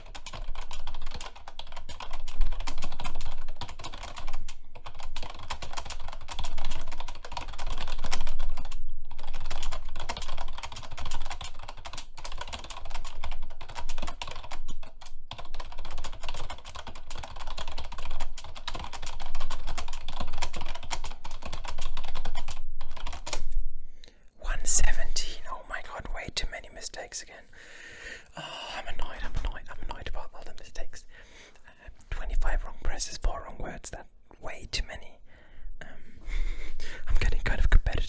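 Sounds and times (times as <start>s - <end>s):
fast typing on computer keyboard: 0.0s - 23.5s.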